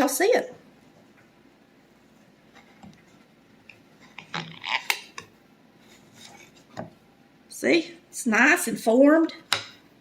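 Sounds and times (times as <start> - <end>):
utensil scraping a cake plate: 5.8 - 6.8.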